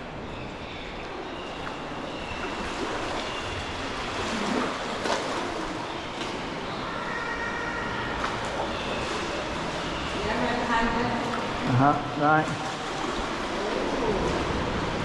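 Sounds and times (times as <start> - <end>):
sea water splashing against rock: 1.5 - 6.7.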